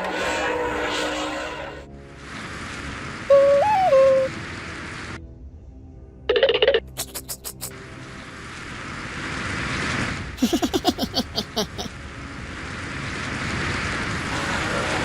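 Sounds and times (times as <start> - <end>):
steady rushing noise: 7.8 - 15.0.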